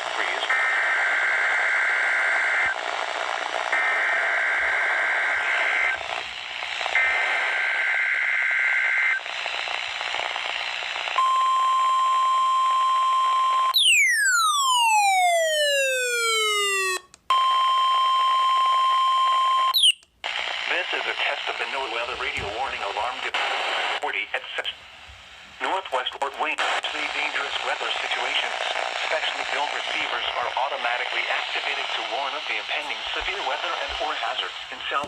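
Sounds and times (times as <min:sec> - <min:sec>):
radio static: 0:00.0 - 0:11.2, 0:20.2 - 0:35.0.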